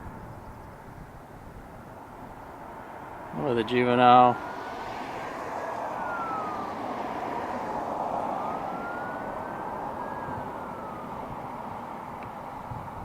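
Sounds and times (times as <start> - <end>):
siren wailing: 3.0 - 13.0.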